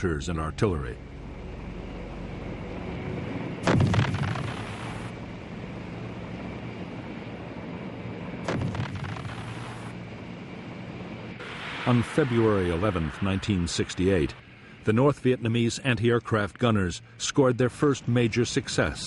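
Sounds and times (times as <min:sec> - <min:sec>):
steady low drone: 0:00.0 - 0:19.0
artillery blasts: 0:03.6 - 0:05.1, 0:08.4 - 0:09.9.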